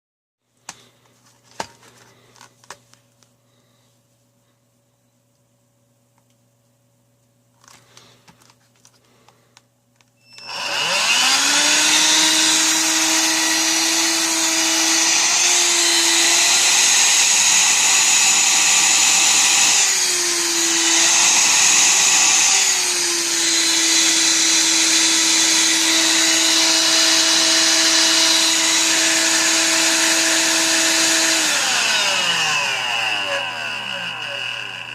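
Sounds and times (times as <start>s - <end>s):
vacuum motor whine: 10.2s - 34.9s.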